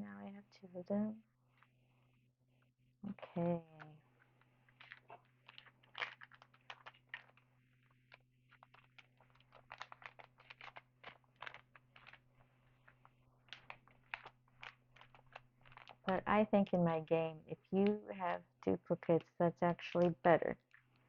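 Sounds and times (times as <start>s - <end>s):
trading cards clicking and crackling: 4.7s - 16.3s.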